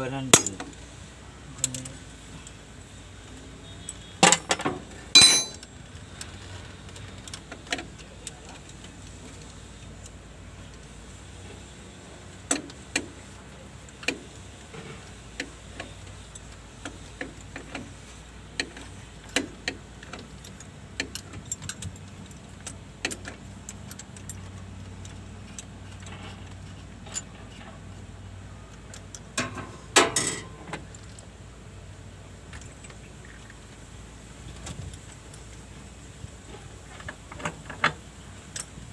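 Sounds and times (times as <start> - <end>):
hand tools clinking on metal: 0.3 - 0.7, 4.2 - 5.7
metal clatter: 4.2 - 5.7
low steady hum: 4.3 - 5.7.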